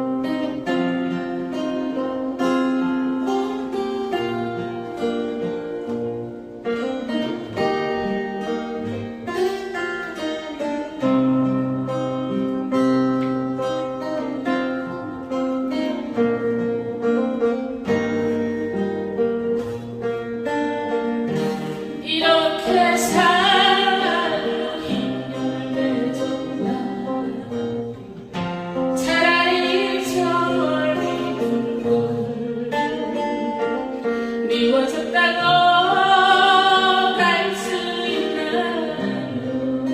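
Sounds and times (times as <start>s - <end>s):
plucked acoustic guitar: 0.0s - 39.9s
person singing with vibrato: 21.4s - 28.2s, 28.8s - 39.9s.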